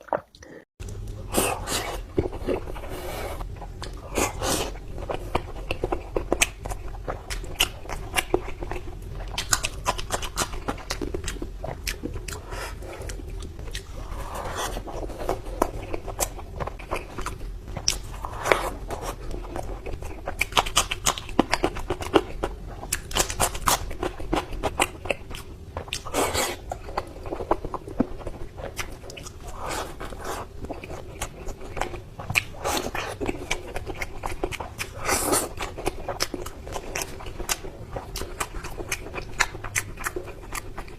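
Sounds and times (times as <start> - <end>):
biting and chewing food: 0.0 - 40.9.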